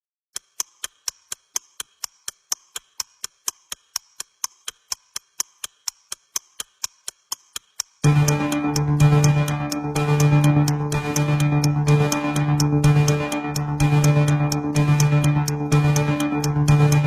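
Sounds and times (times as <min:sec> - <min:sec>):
steady ticking: 0:00.3 - 0:17.0
music: 0:08.0 - 0:17.0.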